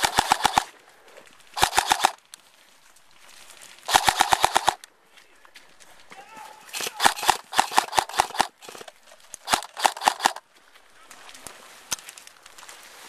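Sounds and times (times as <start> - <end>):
airsoft rifle shots: 0.0 - 0.7, 1.6 - 2.2, 3.9 - 4.8, 6.7 - 10.4.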